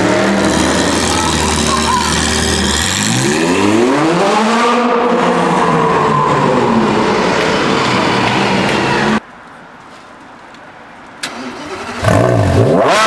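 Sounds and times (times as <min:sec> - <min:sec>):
car engine running: 0:00.0 - 0:04.0
engine starting and revving: 0:11.2 - 0:13.0.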